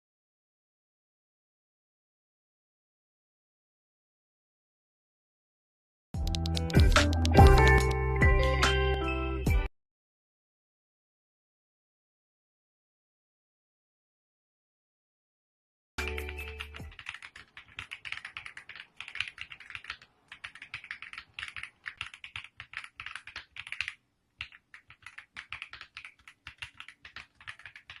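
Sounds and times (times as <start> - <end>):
rapid irregular clicking: 16.0 - 28.0.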